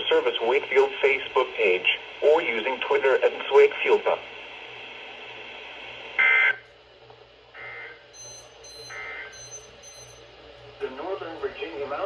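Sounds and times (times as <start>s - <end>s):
radio hiss: 0.0s - 6.6s
warbling data squawks: 7.6s - 10.2s
faint high-pitched beeps: 8.2s - 10.2s.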